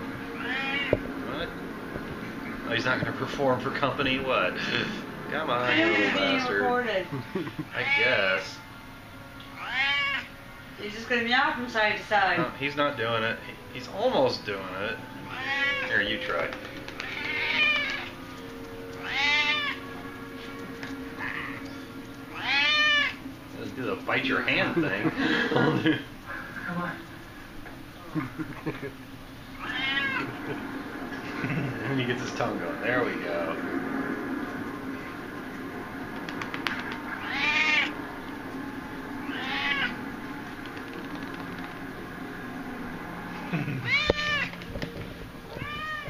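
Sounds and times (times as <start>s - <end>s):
cat meowing: 0.4s - 1.0s, 5.5s - 6.5s, 9.6s - 10.3s, 15.2s - 16.1s, 17.0s - 18.2s, 19.0s - 19.8s, 21.2s - 21.7s, 22.3s - 23.2s, 29.6s - 30.4s, 37.2s - 38.0s, 39.2s - 40.0s, 43.8s - 44.6s, 45.5s - 46.0s.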